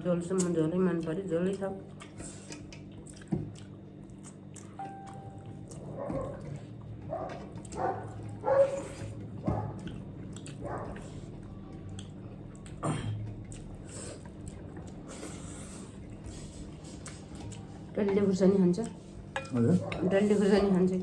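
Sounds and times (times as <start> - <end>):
person chewing: 1.9 - 17.8.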